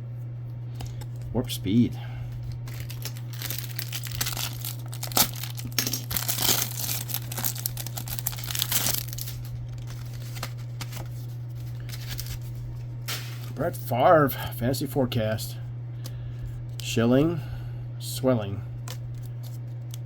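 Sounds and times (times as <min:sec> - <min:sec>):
low electrical hum: 0:00.0 - 0:20.0
wrapper torn open and crinkled: 0:02.5 - 0:12.6.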